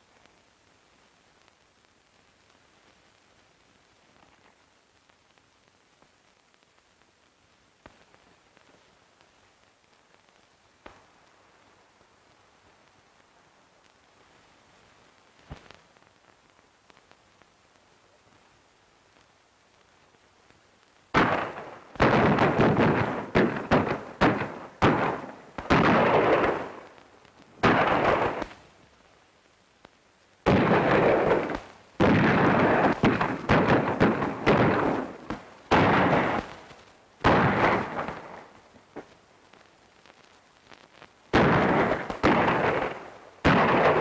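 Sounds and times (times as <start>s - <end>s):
gunshots with echo: 21.2s - 26.8s, 27.6s - 28.5s, 41.4s - 44.0s.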